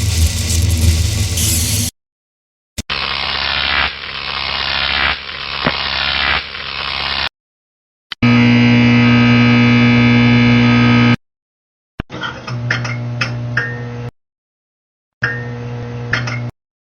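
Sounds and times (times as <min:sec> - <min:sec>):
loud electrical buzz: 0:00.0 - 0:01.9, 0:02.8 - 0:07.3, 0:08.2 - 0:11.2.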